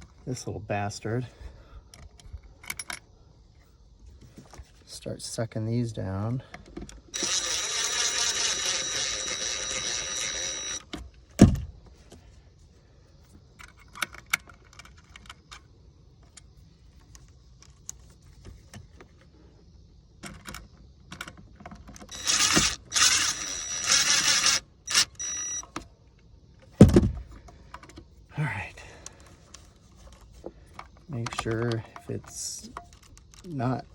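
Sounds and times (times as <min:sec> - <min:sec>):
electric screwdriver whirring: 0:07.2 - 0:10.9, 0:22.1 - 0:25.6.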